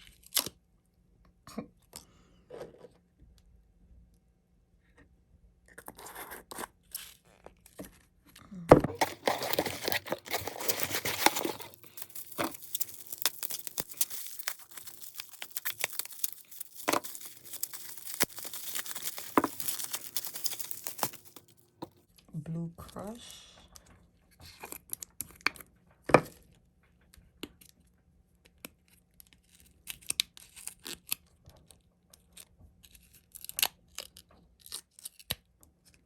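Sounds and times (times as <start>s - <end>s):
packaging crinkling and tearing: 8.8s - 21.6s.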